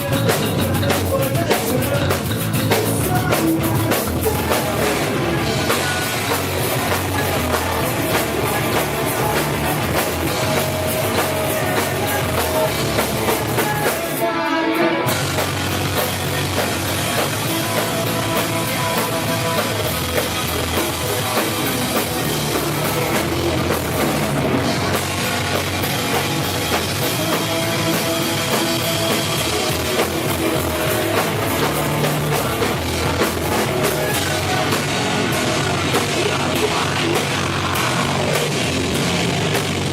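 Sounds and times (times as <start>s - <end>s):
drum kit: 0.0s - 39.9s
rock band playing loudly: 0.0s - 39.9s.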